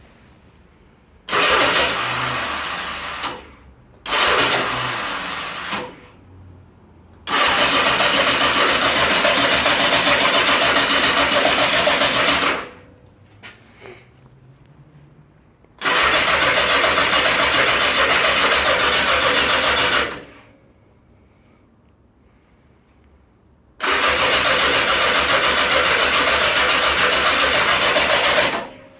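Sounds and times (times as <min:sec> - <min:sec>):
motorcycle electric starter cranking: 0:01.2 - 0:06.1, 0:07.2 - 0:12.9, 0:15.8 - 0:20.5, 0:23.8 - 0:28.9.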